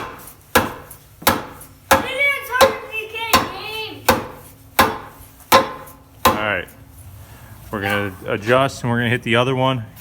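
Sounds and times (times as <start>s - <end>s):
hammer striking steel chisel: 0.0s - 6.5s.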